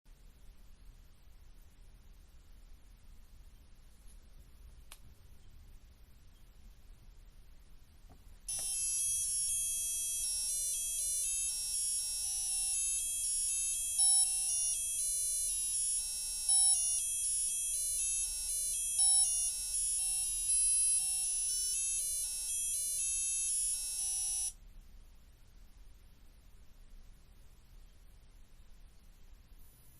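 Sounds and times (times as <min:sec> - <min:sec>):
alarm clock beeping melody: 0:08.5 - 0:24.6.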